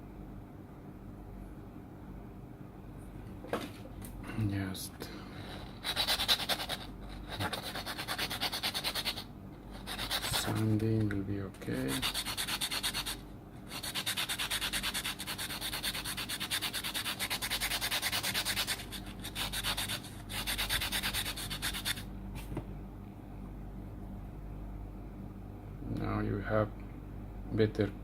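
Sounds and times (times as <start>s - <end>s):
hand sanding metal contact: 5.4s - 11.1s, 11.7s - 22.0s.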